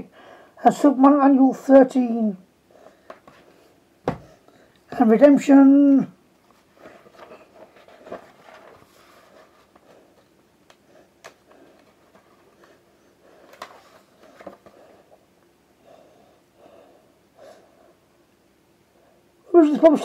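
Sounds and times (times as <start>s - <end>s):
book pages rustling: 6.4s - 12.8s, 13.4s - 15.1s.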